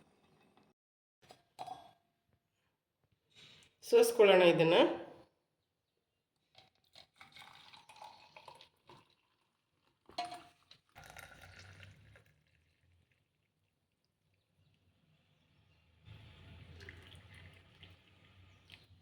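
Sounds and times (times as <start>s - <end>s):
liquid pouring and dripping: 6.5s - 14.8s, 16.1s - 19.0s.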